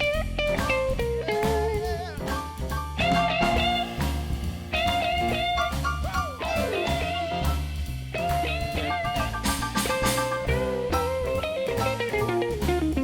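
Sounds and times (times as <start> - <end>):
bass guitar: 0.0 - 13.0
drum kit: 0.0 - 13.0
electric guitar lead: 3.0 - 13.0.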